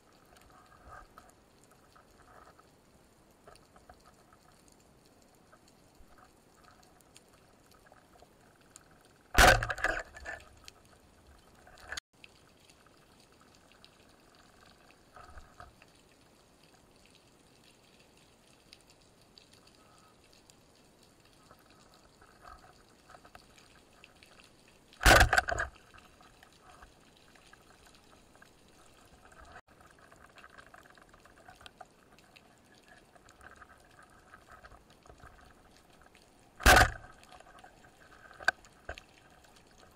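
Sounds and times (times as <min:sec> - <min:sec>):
underwater crackling: 0:00.0 - 0:39.9.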